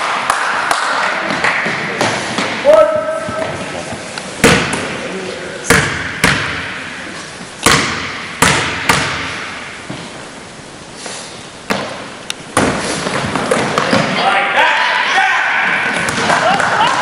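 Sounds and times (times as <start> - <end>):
basketball bouncing on hardwood floor: 4.4 - 4.8, 5.7 - 6.6, 7.6 - 9.3.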